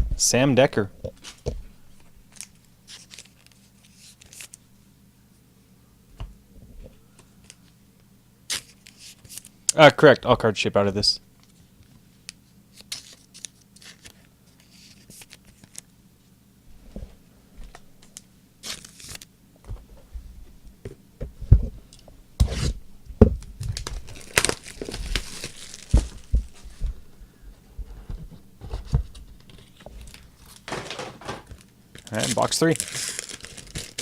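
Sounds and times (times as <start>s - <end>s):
plastic wrap tearing and crumpling: 18.6s - 19.3s, 23.6s - 26.3s, 32.0s - 34.0s.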